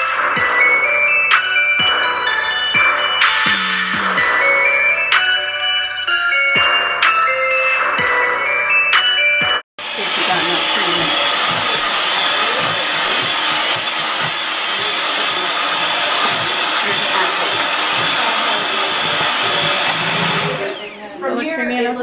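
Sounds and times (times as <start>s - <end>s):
kitchen appliance whirring: 9.8s - 21.3s.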